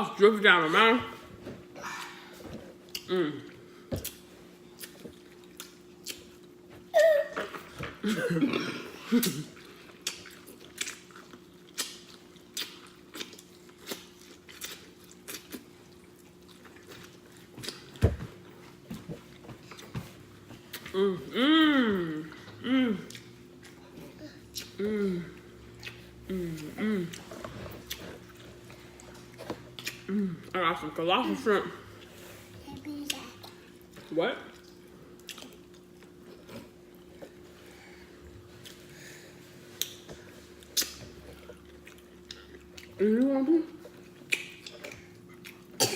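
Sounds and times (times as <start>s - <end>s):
wet chewing and lip smacking: 4.0s - 6.7s, 9.8s - 18.0s, 25.6s - 30.1s, 34.5s - 37.4s, 40.6s - 43.0s, 43.8s - 45.8s.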